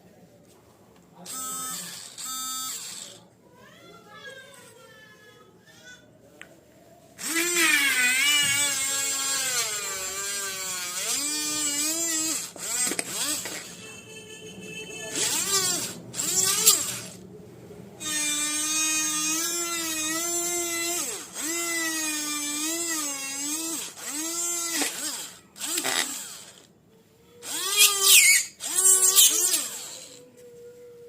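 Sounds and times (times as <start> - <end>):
mini drill whining: 1.3 - 3.2, 7.2 - 13.8, 15.1 - 17.2, 18.0 - 26.7, 27.4 - 30.3.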